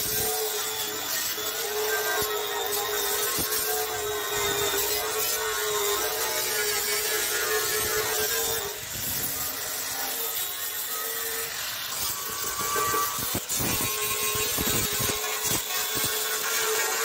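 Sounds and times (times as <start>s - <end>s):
electric power tool whining: 0.0s - 17.0s
grinding hiss: 0.0s - 17.0s.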